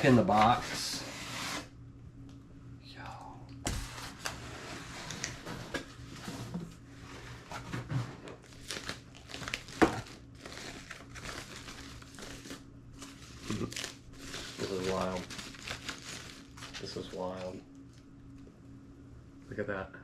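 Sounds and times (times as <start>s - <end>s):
packaging crinkling and rustling: 7.5s - 17.6s.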